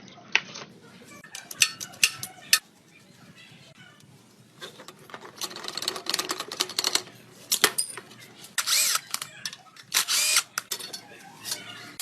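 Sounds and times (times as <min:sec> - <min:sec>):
hand tools clicking and rattling: 0:01.2 - 0:02.6, 0:04.6 - 0:12.0.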